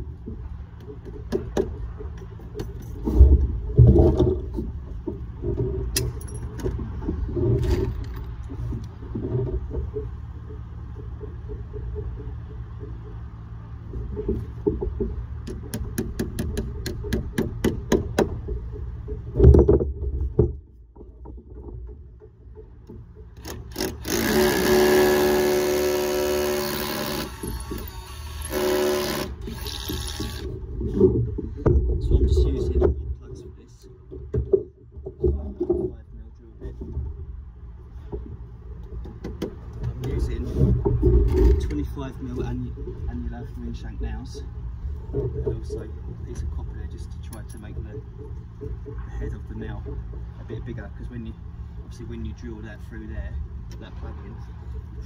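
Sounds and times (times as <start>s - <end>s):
low rumble: 30.5s - 39.0s.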